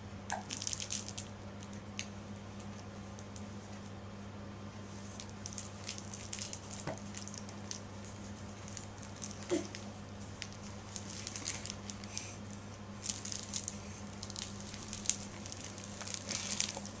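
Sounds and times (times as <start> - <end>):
steady low hum: 0.0 - 17.0
baby toy crinkling: 0.3 - 1.3, 5.1 - 17.0.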